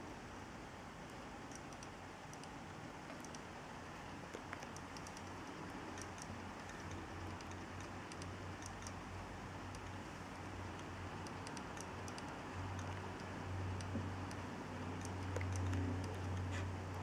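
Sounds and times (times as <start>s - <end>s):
hard disk drive humming: 0.0s - 17.0s
hard disk drive clicking: 4.3s - 9.0s, 10.6s - 17.0s.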